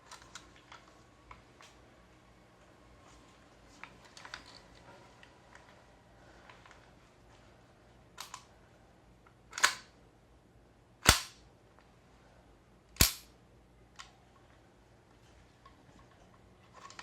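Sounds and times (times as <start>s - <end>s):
airsoft rifle shots: 11.0s - 11.4s, 13.0s - 13.3s.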